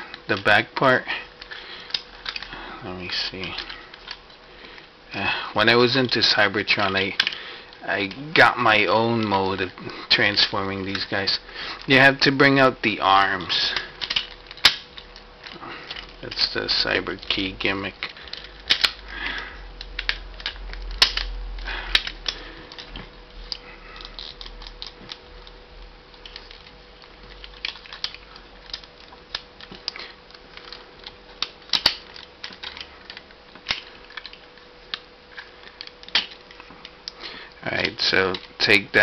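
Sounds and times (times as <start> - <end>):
plastic toy parts clicking: 1.4 - 2.5, 14.0 - 19.0, 19.8 - 37.2, 37.8 - 38.6.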